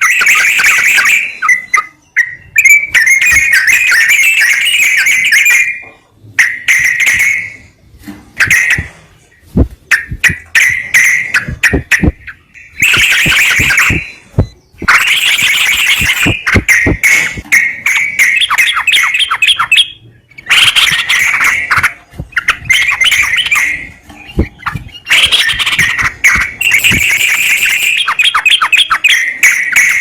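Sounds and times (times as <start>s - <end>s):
bird singing bubbling phrases: 9.9s - 29.8s.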